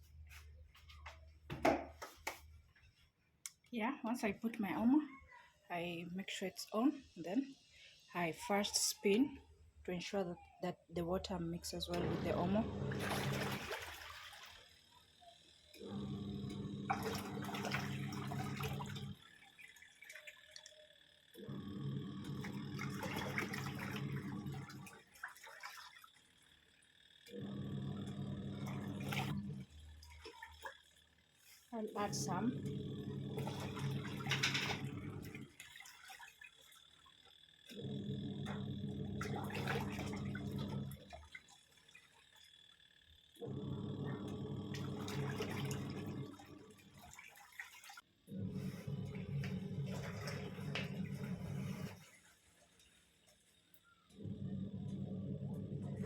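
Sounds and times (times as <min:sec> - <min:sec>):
washing machine motor hum: 0:00.0 - 0:56.0
water sloshing: 0:11.6 - 0:14.8, 0:16.9 - 0:20.8, 0:22.4 - 0:26.5, 0:28.6 - 0:31.2, 0:31.8 - 0:42.6, 0:44.7 - 0:53.5.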